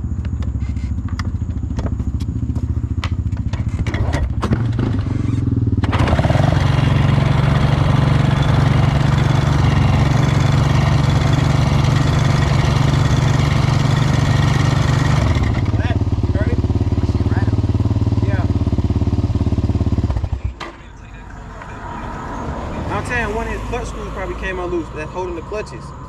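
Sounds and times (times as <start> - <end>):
engine idling with ticks: 0.0 - 6.0.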